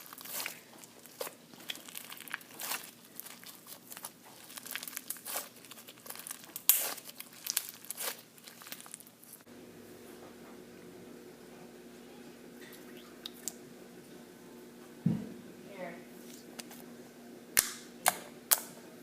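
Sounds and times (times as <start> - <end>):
slime crackling and popping: 0.0 - 9.4
faint steady hum: 0.0 - 19.0.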